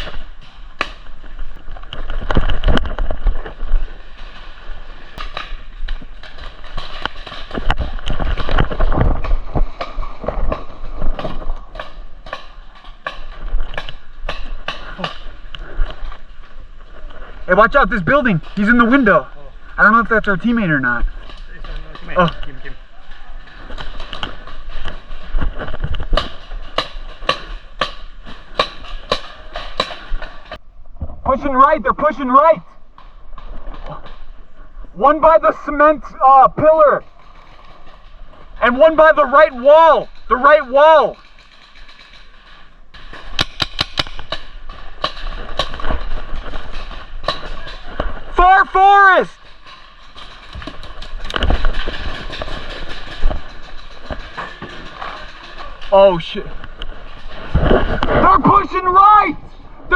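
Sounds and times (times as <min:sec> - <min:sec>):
footfalls: 0:00.0 - 0:59.9
paintball markers firing: 0:41.1 - 0:45.9.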